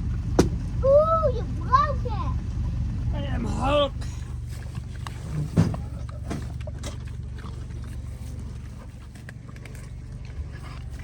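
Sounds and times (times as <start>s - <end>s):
steady low hum: 0.0s - 11.0s
thump: 0.4s - 0.6s
pigs eating with smacks and crunches: 3.9s - 11.0s.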